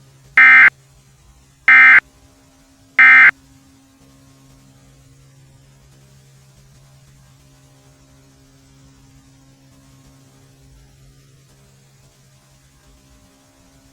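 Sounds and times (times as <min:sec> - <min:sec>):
faint steady hum: 0:00.4 - 0:00.7, 0:01.7 - 0:02.0, 0:03.0 - 0:03.3
short data bursts: 0:00.4 - 0:00.7, 0:01.7 - 0:02.0, 0:03.0 - 0:03.3.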